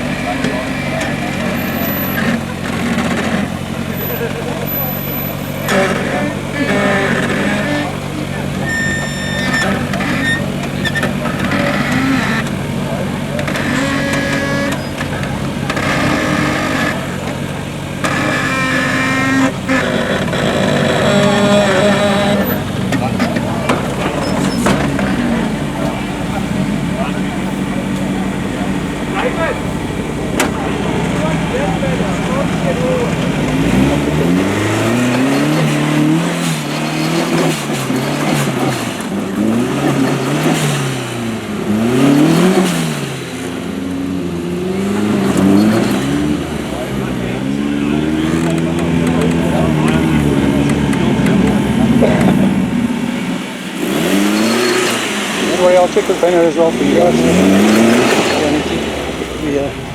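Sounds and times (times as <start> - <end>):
truck engine revving: 0.0 - 59.9.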